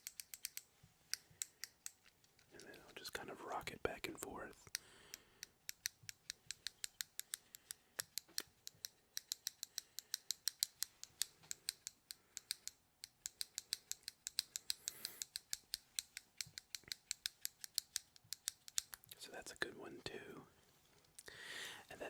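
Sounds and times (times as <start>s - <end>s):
plastic toy clicking: 0.0s - 2.8s, 4.5s - 19.1s.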